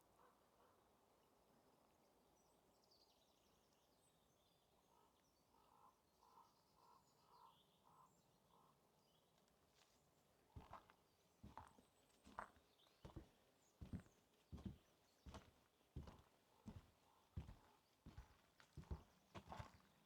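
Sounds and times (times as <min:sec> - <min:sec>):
birds chirping: 0:10.6 - 0:20.0
footstep thump: 0:14.6 - 0:16.8.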